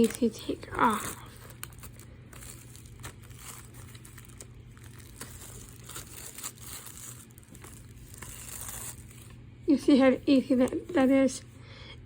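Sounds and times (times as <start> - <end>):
plastic crinkling and crackling: 0.0 - 9.4
plastic shrink wrap tearing: 0.0 - 9.4.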